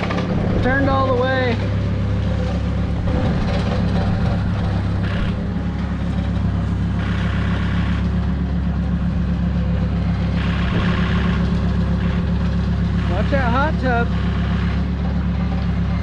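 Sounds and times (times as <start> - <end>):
diesel engine running: 0.0 - 16.0
harsh high engine sound: 0.0 - 16.0.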